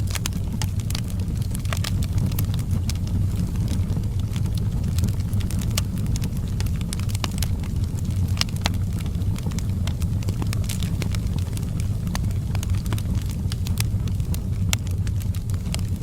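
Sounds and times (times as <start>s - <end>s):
wood fire crackling and popping: 0.0s - 16.0s.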